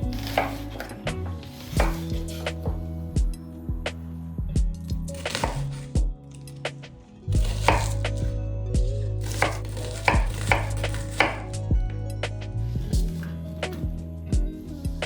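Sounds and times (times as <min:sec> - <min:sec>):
knife chopping on cutting board: 0:00.1 - 0:02.8, 0:05.2 - 0:05.8, 0:07.4 - 0:08.3, 0:09.2 - 0:11.5.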